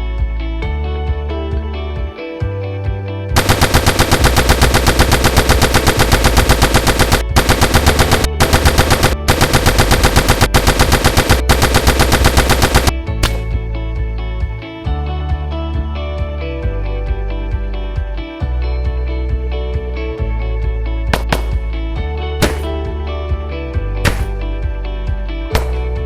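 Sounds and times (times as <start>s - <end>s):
guitar background music: 0.0s - 3.4s, 12.9s - 26.0s
machine-gun fire bursts: 3.4s - 13.0s.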